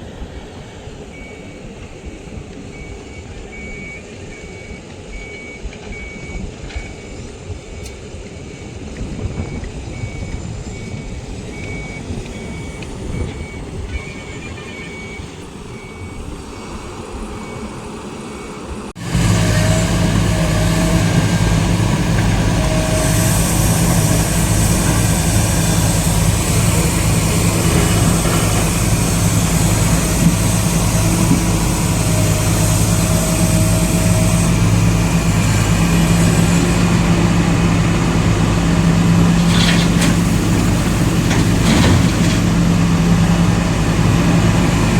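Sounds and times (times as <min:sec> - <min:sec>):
diesel engine running: 0:00.1 - 0:44.9.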